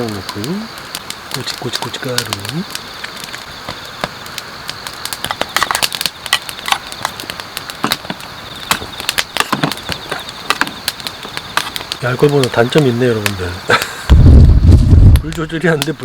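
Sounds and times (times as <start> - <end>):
crickets chirring: 0.0 - 16.0
sharp clicks and light knocks: 5.1 - 12.6.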